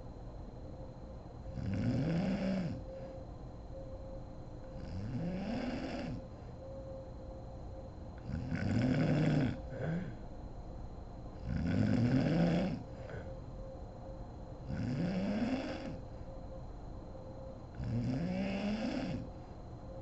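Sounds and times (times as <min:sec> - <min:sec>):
woman snoring: 0:01.5 - 0:02.9, 0:04.8 - 0:06.2, 0:08.2 - 0:10.2, 0:11.4 - 0:13.3, 0:14.7 - 0:16.0, 0:17.8 - 0:19.3.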